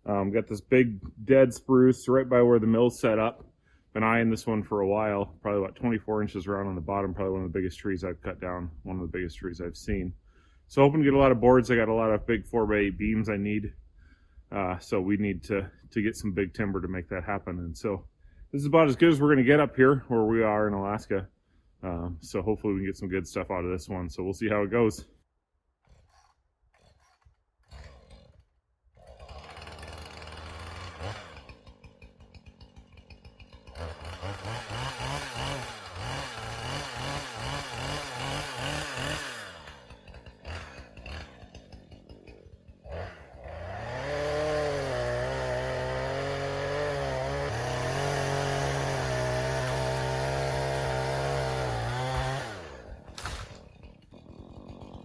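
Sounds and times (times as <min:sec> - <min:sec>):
chainsaw engine revving: 0:25.9 - 0:55.0.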